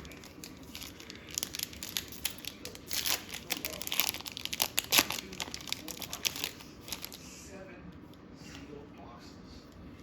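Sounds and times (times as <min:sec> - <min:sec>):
wrapper being torn and crinkled: 0:00.0 - 0:07.2.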